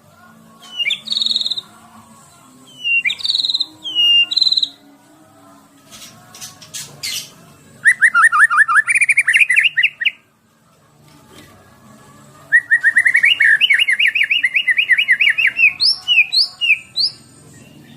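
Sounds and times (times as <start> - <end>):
bird singing trilled phrases: 0.6 - 1.7, 2.7 - 4.8, 7.0 - 10.2, 12.6 - 17.9.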